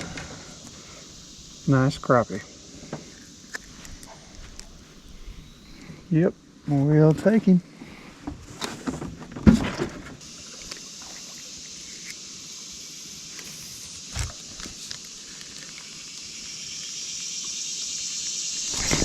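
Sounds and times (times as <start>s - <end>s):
steady high hiss: 0.0s - 8.2s, 10.2s - 19.0s.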